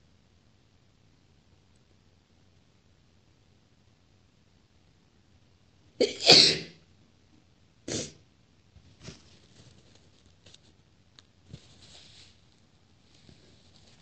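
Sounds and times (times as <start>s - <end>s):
faint small noises: 0.0s - 14.0s
woman sneezing: 6.0s - 6.8s.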